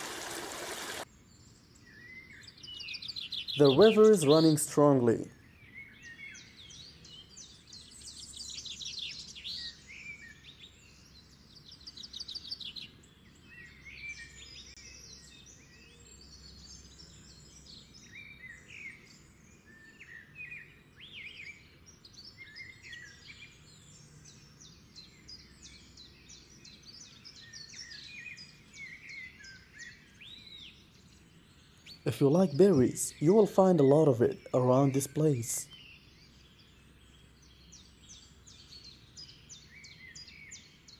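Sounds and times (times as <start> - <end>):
running water: 0.0 - 1.1
birds singing and chirping: 0.0 - 40.9.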